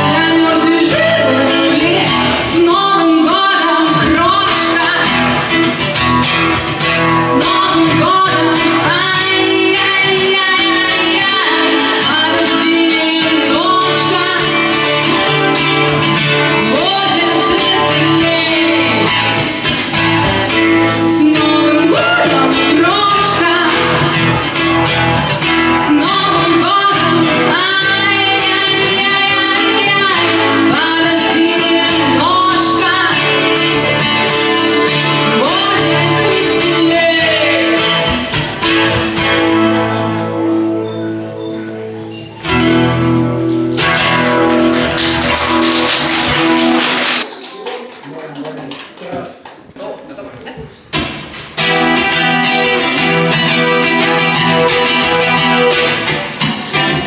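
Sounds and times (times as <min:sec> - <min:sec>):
person singing: 0:00.0 - 0:05.8, 0:07.1 - 0:24.8, 0:25.4 - 0:40.2, 0:51.6 - 0:57.0
strummed acoustic guitar: 0:00.0 - 0:47.2, 0:50.9 - 0:57.0.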